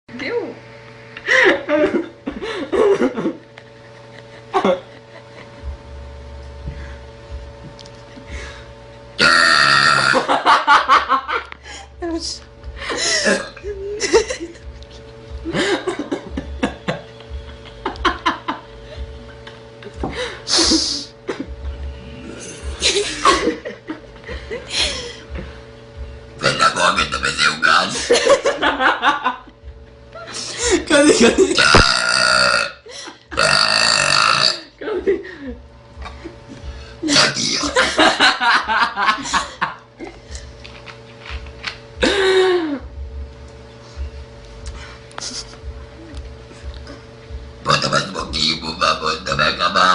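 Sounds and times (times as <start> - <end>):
people laughing: 1.2 - 5.7, 10.2 - 11.5, 12.8 - 14.7, 15.4 - 21.5, 22.6 - 25.5, 27.9 - 29.6, 30.2 - 31.6, 34.8 - 40.2
people chuckling: 1.2 - 5.8, 12.8 - 25.6, 27.9 - 29.6, 30.2 - 31.7, 34.8 - 40.4, 42.0 - 42.9
woman burping loudly: 9.2 - 10.4, 13.2 - 13.6, 31.4 - 34.7.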